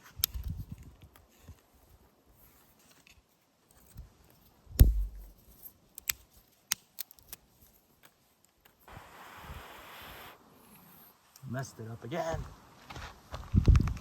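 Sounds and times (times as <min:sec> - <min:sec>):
heavy thump: 0:04.8 - 0:05.3.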